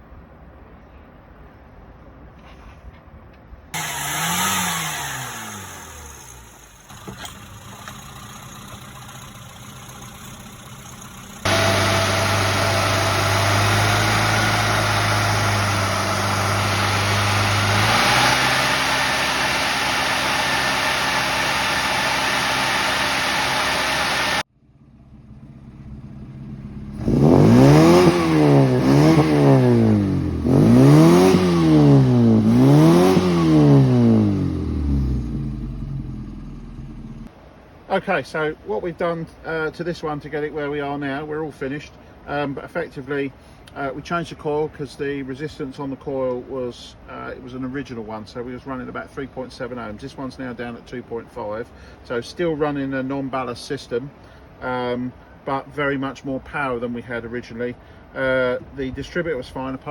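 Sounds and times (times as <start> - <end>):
car engine revving: 3.8 - 37.3.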